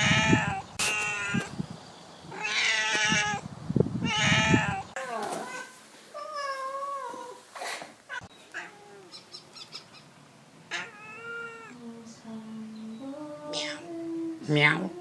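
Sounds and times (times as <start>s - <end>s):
cat meowing: 0.0s - 1.5s, 2.3s - 3.4s, 4.0s - 7.4s, 8.1s - 9.2s, 10.7s - 11.8s.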